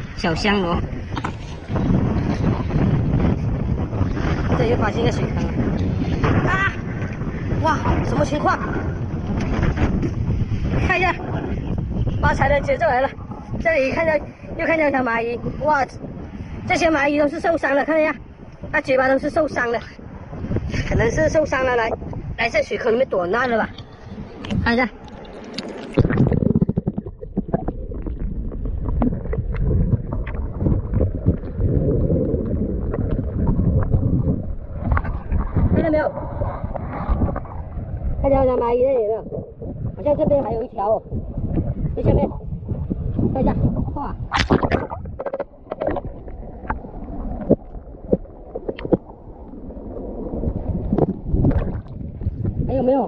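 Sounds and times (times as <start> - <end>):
wind buffeting microphone: 0.0 - 53.0
seawater sloshing in rock pool: 20.9 - 53.0.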